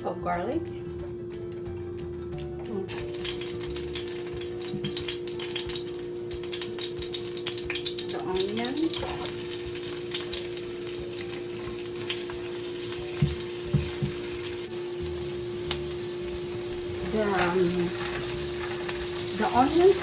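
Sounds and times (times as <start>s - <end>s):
utensil knocking against pan: 2.9s - 14.6s
onions sizzling in frying pan: 2.9s - 20.0s
steady hum: 3.0s - 20.0s.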